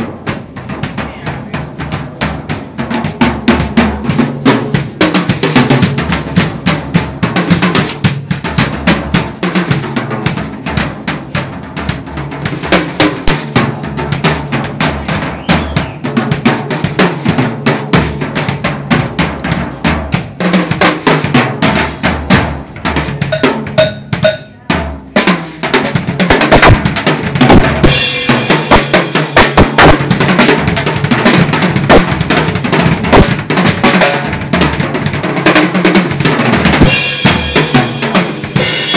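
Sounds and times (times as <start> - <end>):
drum kit playing: 0.0 - 38.9
cymbals crashing: 23.3 - 24.6, 27.8 - 29.5.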